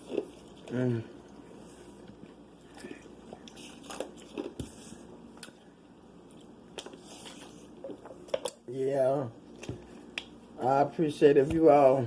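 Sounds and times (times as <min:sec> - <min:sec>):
person chewing fried food: 0:00.0 - 0:08.6.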